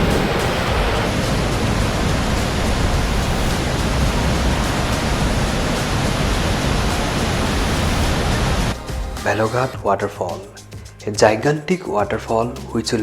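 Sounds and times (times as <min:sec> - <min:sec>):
large waterfall rushing: 0:00.0 - 0:08.8.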